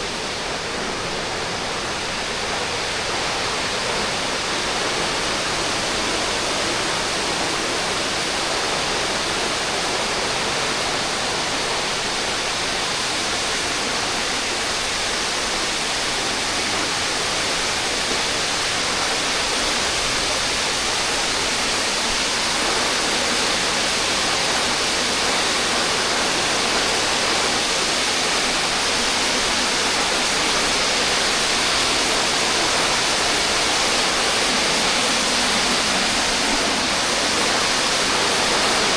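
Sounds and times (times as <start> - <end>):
waterfall splashing: 16.6 - 38.9.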